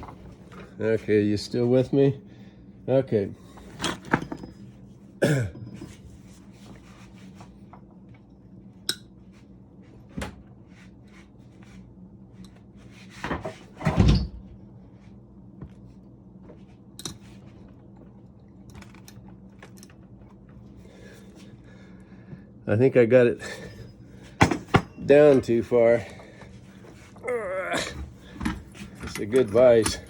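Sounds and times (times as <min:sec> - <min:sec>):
steady low hum: 0:00.0 - 0:30.0.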